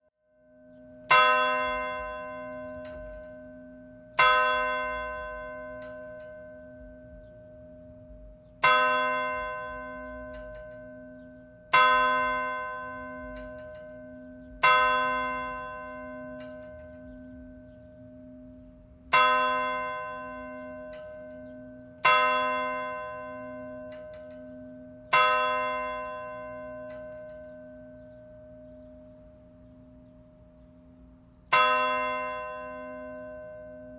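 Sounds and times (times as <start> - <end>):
low wavering hum: 0.4 - 22.1, 26.4 - 31.6
church bell tolling: 0.4 - 33.9.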